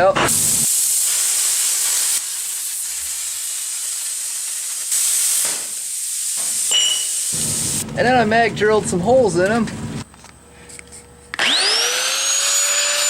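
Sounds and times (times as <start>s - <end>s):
steady high hiss: 0.3s - 9.2s.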